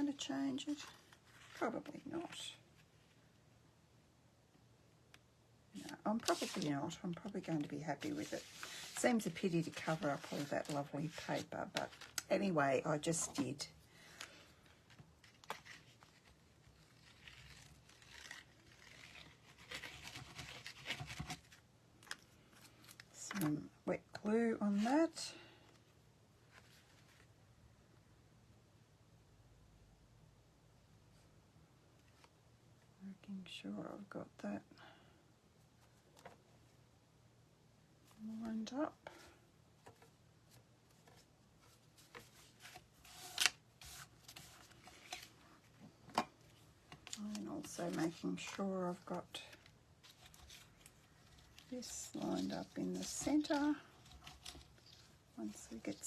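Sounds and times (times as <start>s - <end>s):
paper and card crinkling: 5.8s - 23.5s, 39.9s - 56.0s
paper brushing scrape: 6.2s - 6.7s, 7.9s - 11.5s, 42.0s - 45.3s.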